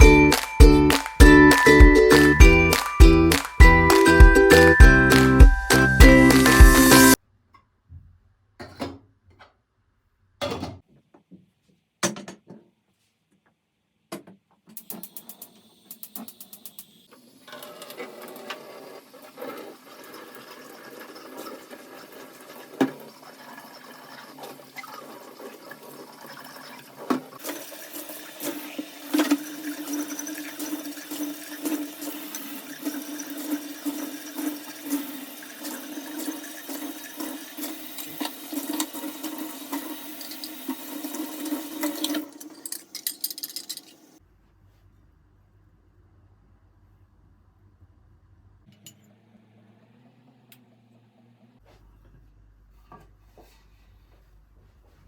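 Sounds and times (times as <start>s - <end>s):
tap water running into sink: 14.8s - 43.9s.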